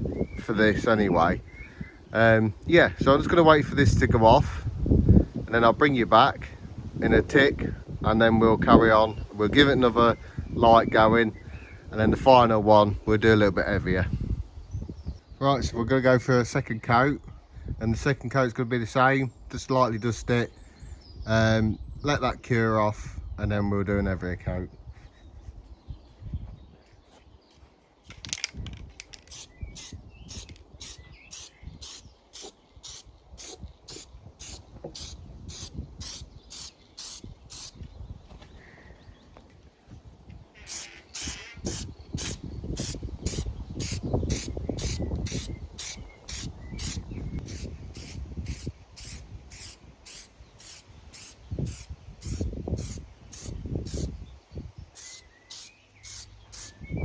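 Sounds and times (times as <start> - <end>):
spray paint can hissing: 29.0 - 37.8, 40.6 - 54.1, 55.0 - 56.8.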